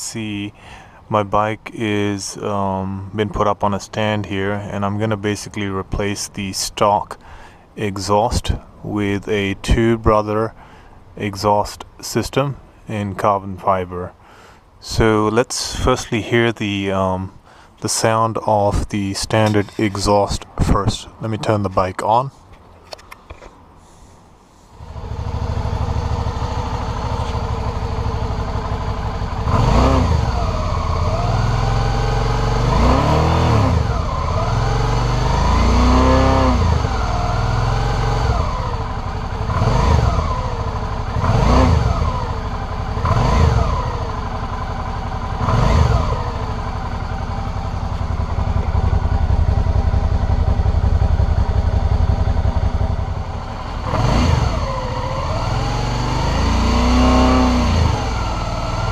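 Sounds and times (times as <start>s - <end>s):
motorcycle engine revving: 24.8s - 58.9s.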